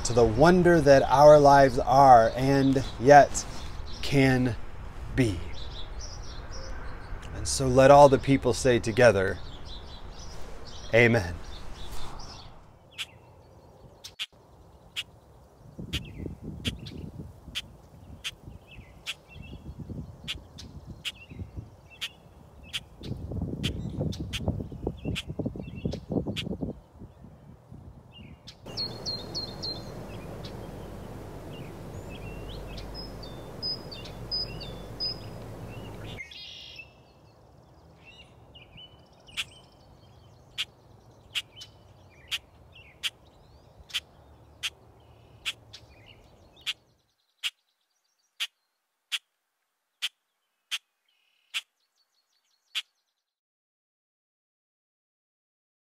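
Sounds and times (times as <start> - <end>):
songbirds chirping: 0.0 - 49.0, 49.7 - 53.4
background hiss: 28.7 - 36.8.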